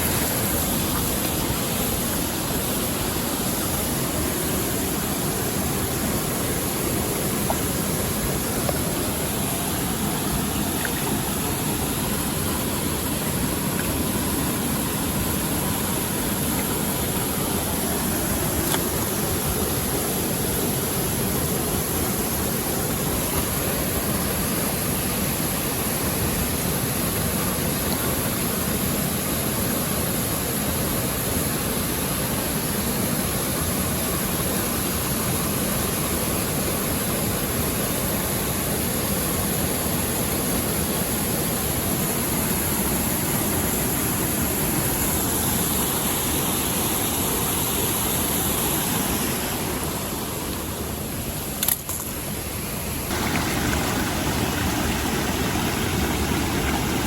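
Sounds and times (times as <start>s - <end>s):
stream water rushing: 0.0s - 57.0s
sharp click: 51.6s - 52.2s.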